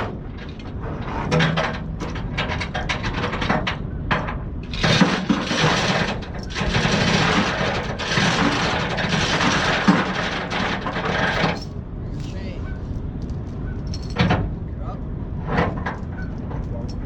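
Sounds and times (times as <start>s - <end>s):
metal chain clinking and rattling: 4.9s - 12.4s, 13.2s - 14.4s, 15.9s - 17.0s.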